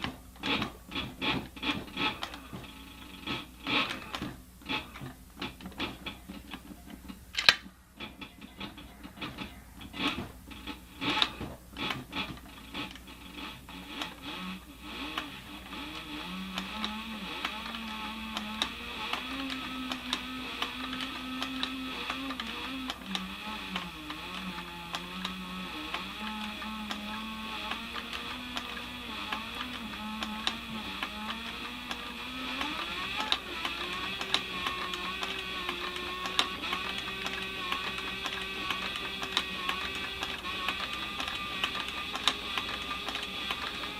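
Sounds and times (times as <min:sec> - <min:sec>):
small electric motor running: 0:09.2 - 0:43.9.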